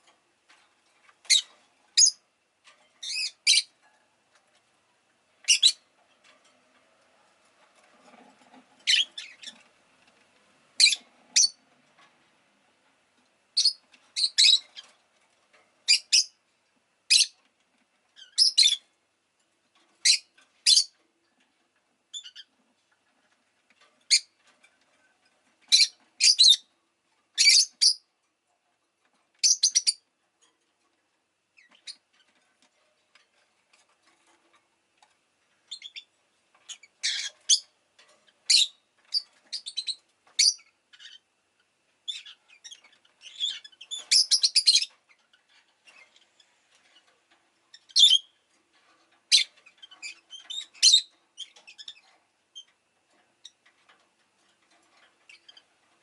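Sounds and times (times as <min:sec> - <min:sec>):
lovebird chirping: 0:01.3 - 0:02.2, 0:03.0 - 0:03.7, 0:05.5 - 0:05.8, 0:08.8 - 0:09.5, 0:10.8 - 0:11.6, 0:13.6 - 0:14.8, 0:15.9 - 0:16.3, 0:18.2 - 0:18.8, 0:20.0 - 0:20.9, 0:22.1 - 0:22.5, 0:25.7 - 0:26.7, 0:27.4 - 0:28.0, 0:35.7 - 0:36.1, 0:38.5 - 0:41.2, 0:42.1 - 0:44.9, 0:47.8 - 0:48.3, 0:49.3 - 0:52.0.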